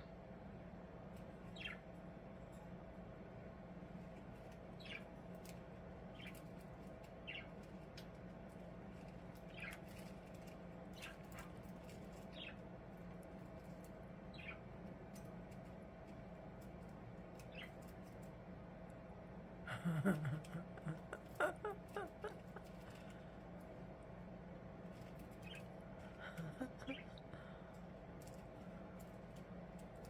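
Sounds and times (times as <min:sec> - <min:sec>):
steady low hum: 0:00.0 - 0:30.0
budgies chirping: 0:01.5 - 0:01.9, 0:04.7 - 0:05.2, 0:06.1 - 0:07.9, 0:09.0 - 0:12.6, 0:14.3 - 0:14.7, 0:25.1 - 0:27.5.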